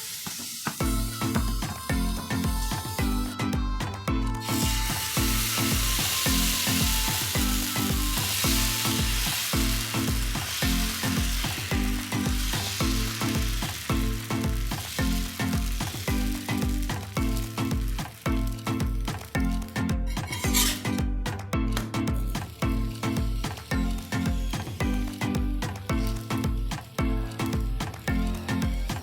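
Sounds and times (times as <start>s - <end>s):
food sizzling in hot oil: 0.0s - 1.9s, 4.4s - 19.4s, 20.1s - 20.8s, 22.4s - 28.1s.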